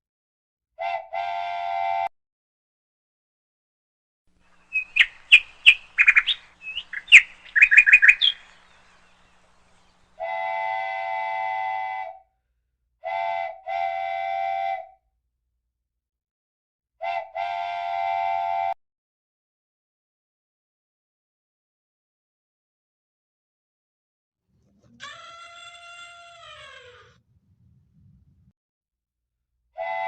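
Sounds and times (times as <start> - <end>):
bird chirping: 4.4 - 10.2.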